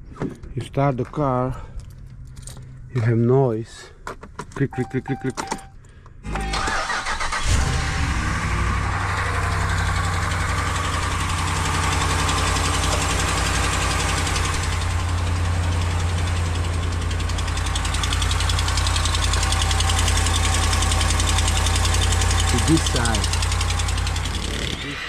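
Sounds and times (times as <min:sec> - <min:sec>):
engine idling with ticking: 0:06.5 - 0:24.9.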